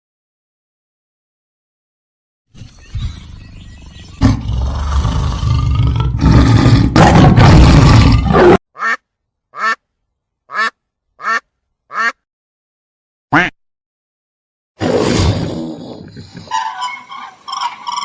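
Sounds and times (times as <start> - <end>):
loud rough animal call: 4.2 - 8.6.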